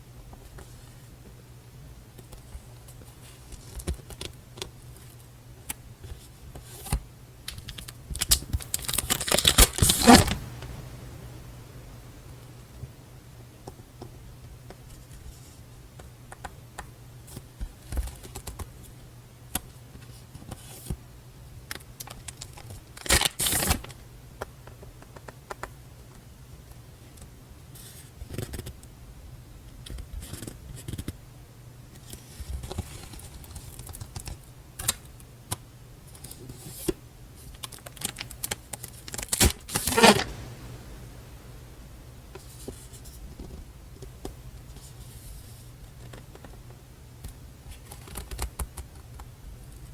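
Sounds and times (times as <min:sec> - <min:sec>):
faint low hum: 0:00.0 - 0:23.0, 0:23.7 - 0:49.9
paper rustling and scraping: 0:08.8 - 0:10.5, 0:39.2 - 0:40.7
small taps and clicks: 0:24.4 - 0:25.8.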